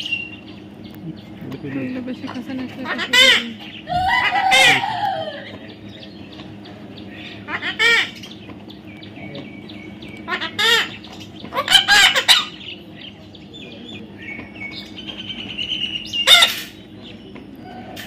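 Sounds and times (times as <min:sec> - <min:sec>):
high bird chirping: 0:00.0 - 0:18.0
harsh bird squawks: 0:02.8 - 0:05.6, 0:07.1 - 0:08.4, 0:10.2 - 0:12.7, 0:15.2 - 0:16.8.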